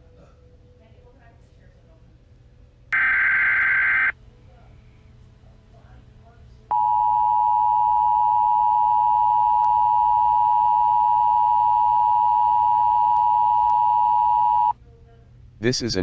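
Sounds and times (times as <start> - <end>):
two-tone electronic alert tone: 3.0 - 4.1.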